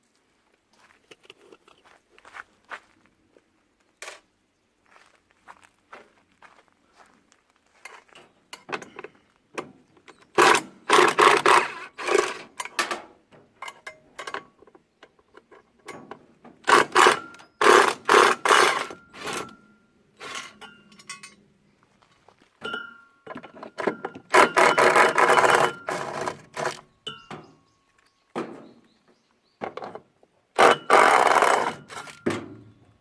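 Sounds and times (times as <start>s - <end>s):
metal knocks and clatter: 20.2s - 21.4s, 22.6s - 29.0s, 29.6s - 33.0s
rapid tool strikes: 24.3s - 27.4s, 30.6s - 32.6s.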